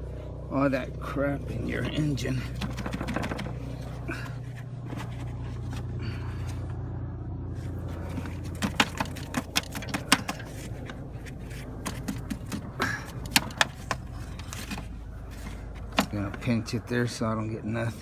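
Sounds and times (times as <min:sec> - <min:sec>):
steady low hum: 0:00.0 - 0:18.0
scraping on plastic fitting: 0:02.4 - 0:06.6, 0:07.8 - 0:16.5.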